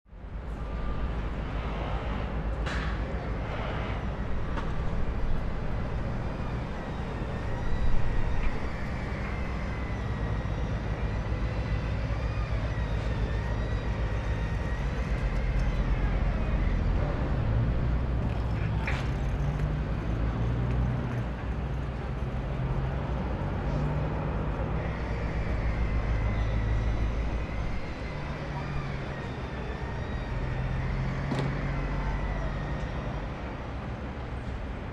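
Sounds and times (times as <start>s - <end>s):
heavy machinery engines running: 0.1s - 34.9s
high wavering whine: 3.4s - 20.2s, 24.5s - 34.4s.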